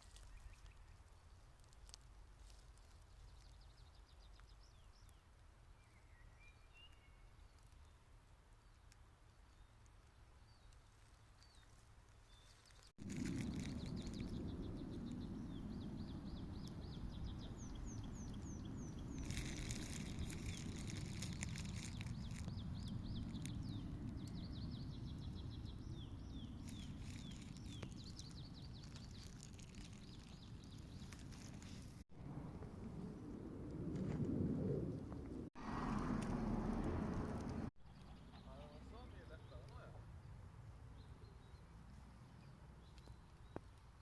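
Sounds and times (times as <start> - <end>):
birds chirping: 8.6 - 33.1
low outdoor rumble: 12.7 - 37.7.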